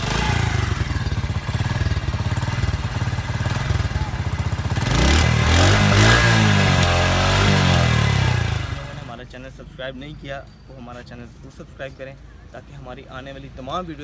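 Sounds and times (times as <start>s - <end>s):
motorcycle engine idling and revving: 0.0s - 9.5s.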